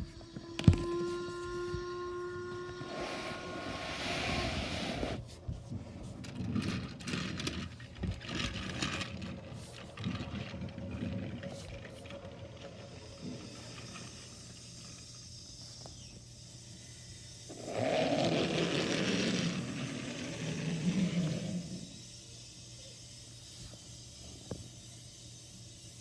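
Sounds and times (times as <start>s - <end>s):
steam hissing: 2.7s - 5.4s.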